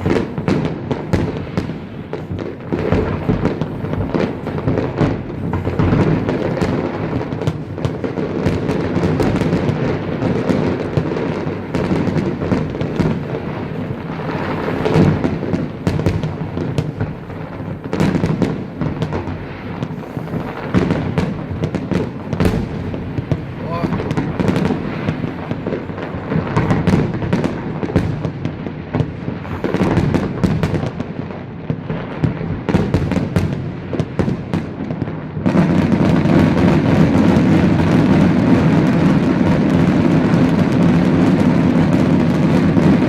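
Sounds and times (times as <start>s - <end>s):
fireworks booms: 0.0s - 43.0s
fireworks crackling: 0.0s - 43.0s.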